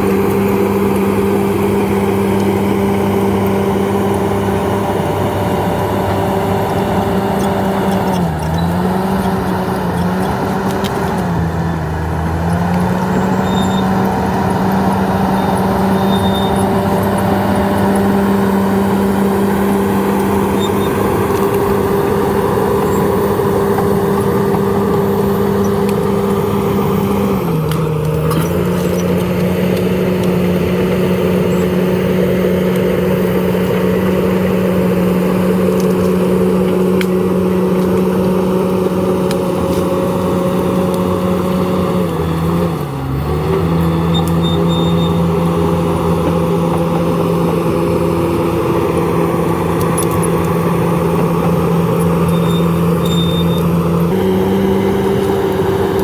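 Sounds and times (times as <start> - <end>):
bulldozer diesel engine running: 0.0 - 56.0.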